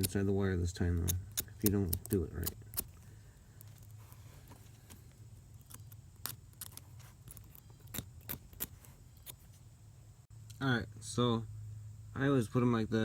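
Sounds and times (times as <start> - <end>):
razor blade scraping wire: 0.0 - 4.0, 4.8 - 9.6
steady low hum: 0.0 - 13.0
wires being handled: 0.8 - 9.7.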